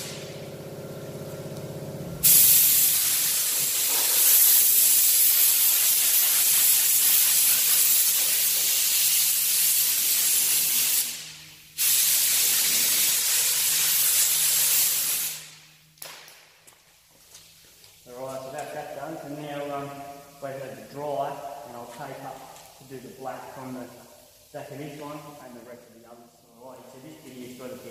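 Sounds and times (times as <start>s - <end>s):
paint spray gun hissing: 2.2s - 15.6s.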